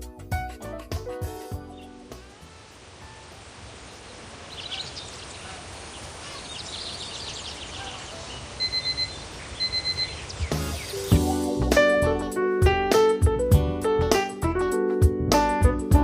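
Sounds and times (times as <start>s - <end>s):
background hiss: 1.3s - 11.6s
faint bird chirps: 3.8s - 11.1s
kitchen timer alarm beeping: 8.6s - 10.2s.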